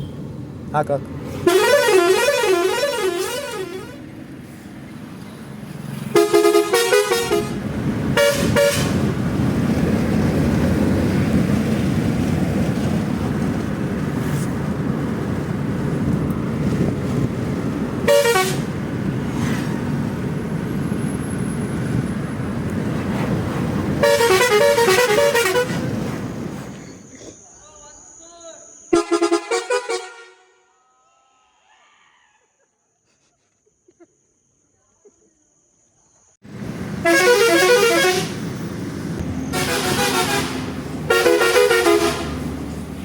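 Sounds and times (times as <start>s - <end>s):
vehicle rumble: 0.0s - 27.4s, 36.4s - 43.0s
multi-tone car air horn: 1.4s - 4.0s, 6.1s - 7.6s, 8.2s - 9.0s, 18.1s - 18.7s, 24.0s - 25.8s, 29.0s - 30.7s, 37.0s - 38.4s, 39.5s - 42.4s.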